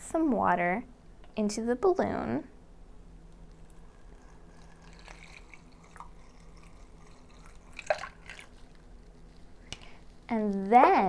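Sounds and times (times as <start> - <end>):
water dripping and trickling: 3.5 - 8.9
water pouring into balloon: 3.5 - 10.6
water splash: 4.8 - 8.6.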